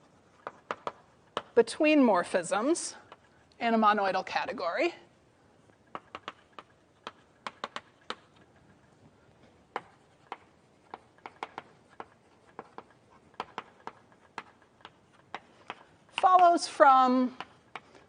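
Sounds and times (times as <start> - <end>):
writing taps on a board: 0.4 - 1.6, 5.8 - 8.4, 9.7 - 16.6, 17.3 - 18.0.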